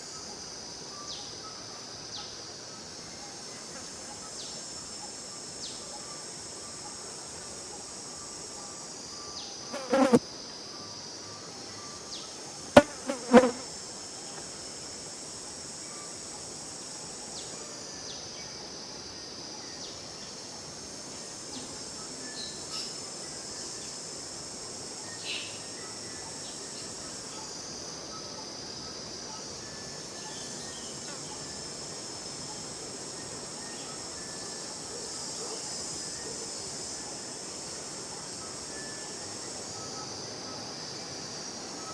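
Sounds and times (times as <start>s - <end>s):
high-pitched insect chorus: 0.0s - 41.9s.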